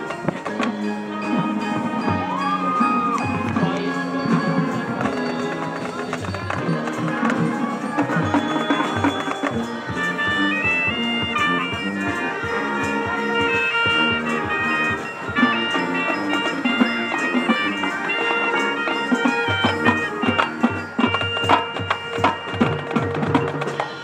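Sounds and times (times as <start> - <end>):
brass and woodwinds chords: 0.0 - 24.0.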